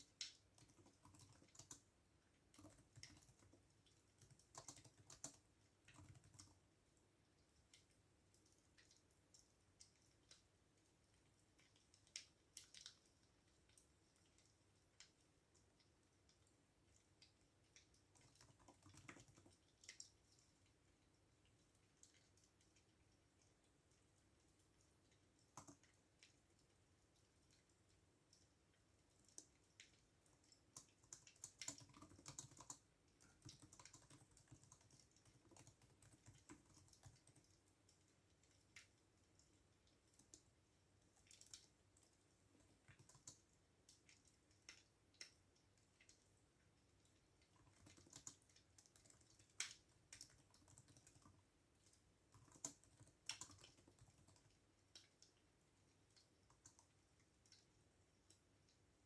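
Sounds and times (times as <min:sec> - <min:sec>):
computer keyboard typing: 0:00.0 - 0:01.9, 0:02.5 - 0:06.6, 0:18.1 - 0:20.2, 0:25.5 - 0:26.0, 0:29.4 - 0:37.6, 0:41.1 - 0:45.4, 0:47.4 - 0:55.2, 0:56.1 - 0:57.7.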